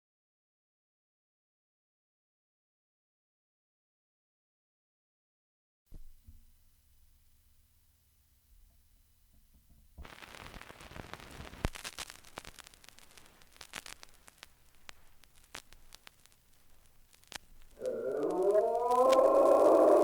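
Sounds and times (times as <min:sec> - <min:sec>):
vinyl record hiss: 0:05.9 - 0:20.0
vinyl clicks and pops: 0:10.0 - 0:19.6.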